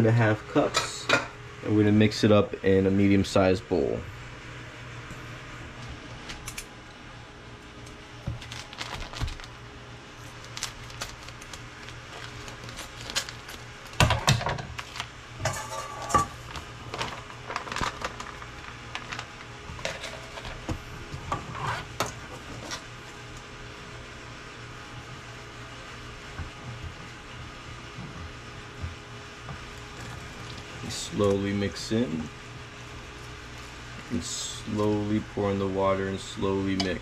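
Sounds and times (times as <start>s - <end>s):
utensils and bowls clinking: 15.4s - 17.1s.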